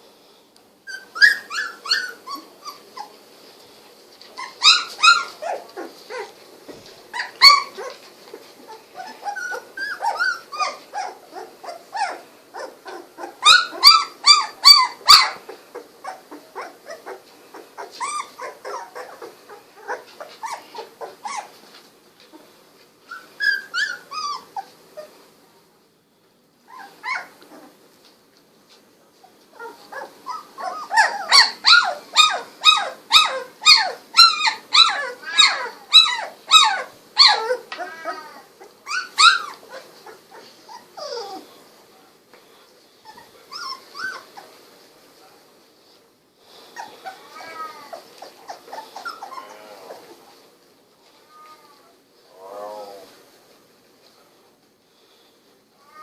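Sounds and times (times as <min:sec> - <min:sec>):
puppies crying: 0:00.9 - 0:03.1, 0:04.4 - 0:06.4, 0:07.1 - 0:21.6, 0:23.1 - 0:25.1, 0:26.7 - 0:27.8, 0:29.6 - 0:41.5, 0:43.0 - 0:44.5, 0:46.7 - 0:50.2.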